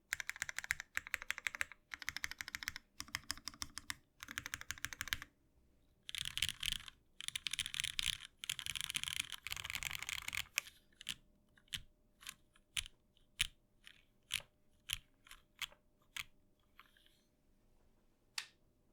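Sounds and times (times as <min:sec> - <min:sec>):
mechanical keyboard keystrokes: 0:00.1 - 0:05.3, 0:06.1 - 0:11.2.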